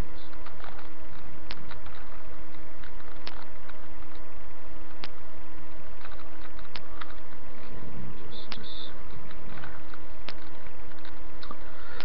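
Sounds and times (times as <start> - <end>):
low hum: 0.0 - 12.0
recording hiss: 0.0 - 12.0
sharp click: 4.9 - 5.2, 8.4 - 11.6.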